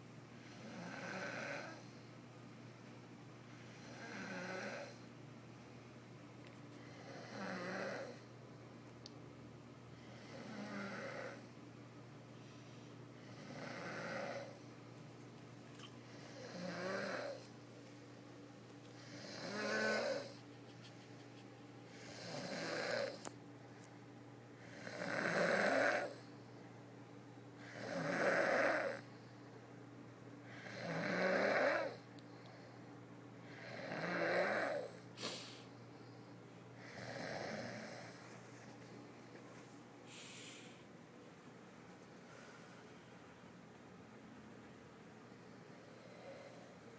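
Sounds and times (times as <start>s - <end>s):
woman snoring: 0.5s - 1.9s, 3.7s - 5.1s, 6.9s - 8.3s, 10.1s - 11.5s, 13.2s - 14.6s, 16.2s - 17.4s, 19.0s - 20.4s, 21.9s - 23.3s, 24.6s - 26.2s, 27.6s - 29.1s, 30.6s - 32.1s, 33.5s - 35.0s, 36.8s - 38.2s, 45.9s - 46.8s.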